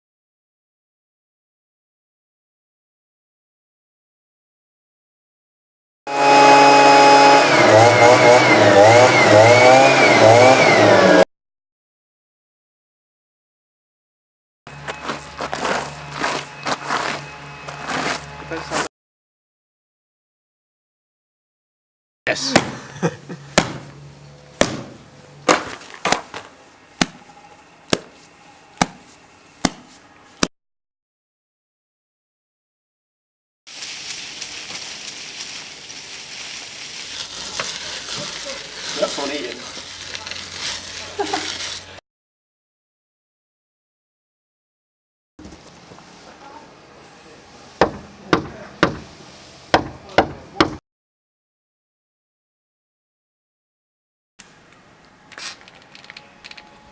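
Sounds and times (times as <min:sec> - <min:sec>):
sharp chopping knocks: 0:22.5 - 0:22.8, 0:23.6 - 0:24.0, 0:24.6 - 0:27.2, 0:27.9 - 0:28.1, 0:28.8 - 0:29.0, 0:29.6 - 0:30.5, 0:47.8 - 0:49.1, 0:49.7 - 0:50.8.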